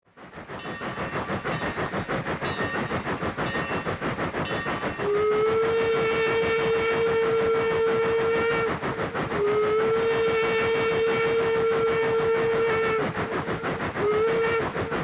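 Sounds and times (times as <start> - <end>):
steam locomotive chuffing: 0.1 - 15.0
steam train whistle: 4.9 - 15.0.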